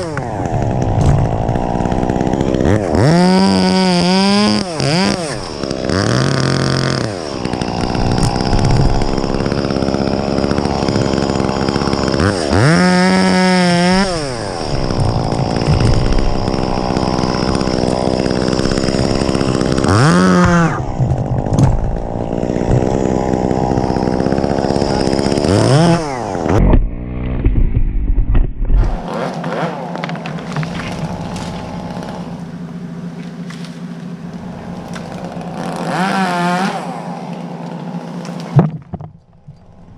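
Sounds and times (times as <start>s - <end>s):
chainsaw revving: 0.0s - 27.5s, 28.8s - 39.1s
low steady engine: 29.9s - 35.9s.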